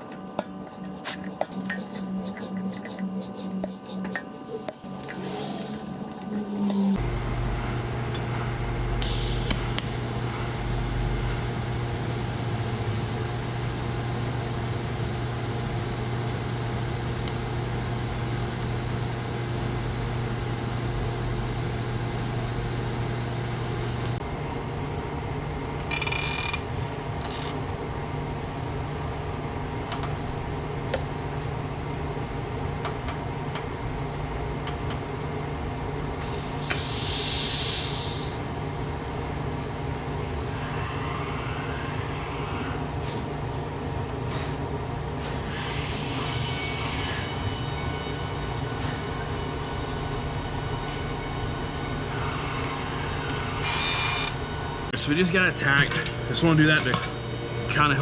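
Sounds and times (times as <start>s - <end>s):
machine hum with low drone: 0.0s - 58.0s.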